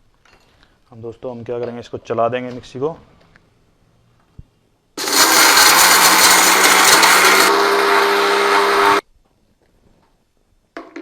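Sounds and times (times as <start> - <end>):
mixer grinder grinding spices: 5.0 - 9.0.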